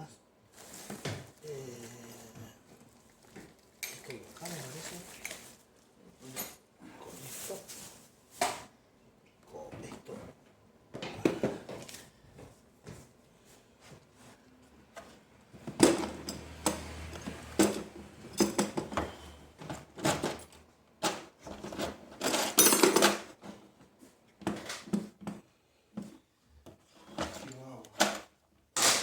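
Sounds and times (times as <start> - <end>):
metal tools clattering: 3.8 - 5.5, 6.3 - 6.6, 15.8 - 19.0, 21.5 - 23.4.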